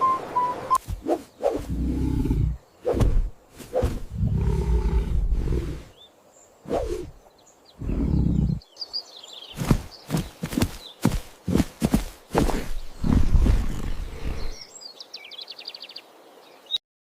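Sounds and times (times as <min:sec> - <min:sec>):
deep rumbling animal calls: 0:01.6 - 0:03.4, 0:04.0 - 0:06.0, 0:07.8 - 0:08.6, 0:12.8 - 0:14.6.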